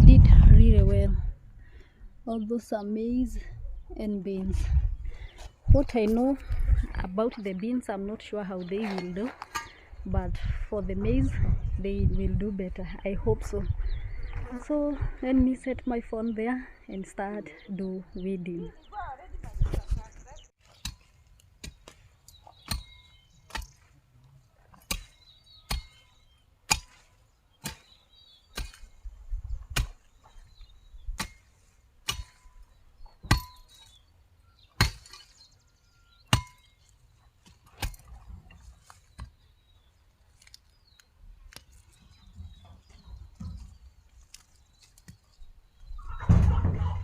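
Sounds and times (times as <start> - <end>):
weeding tool chopping into soil: 20.6 - 23.9, 24.7 - 29.1, 29.7 - 30.1, 31.2 - 32.6, 37.4 - 38.1.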